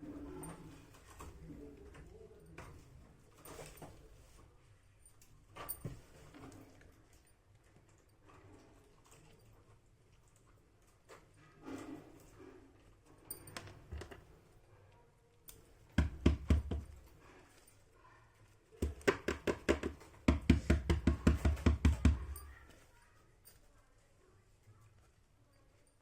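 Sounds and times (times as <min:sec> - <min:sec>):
rapid knocks and taps on toy packaging: 0:15.9 - 0:17.1, 0:18.8 - 0:22.8.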